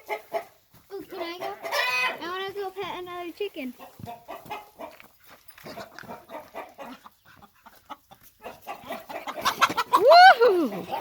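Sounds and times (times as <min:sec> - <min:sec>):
chickens clucking and scuffling: 0:00.0 - 0:11.0.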